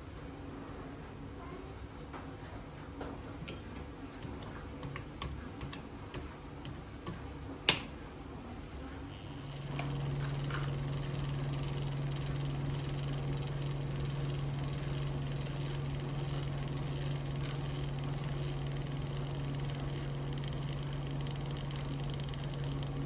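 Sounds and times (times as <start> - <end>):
cotton candy machine motor humming: 6.6 - 23.0.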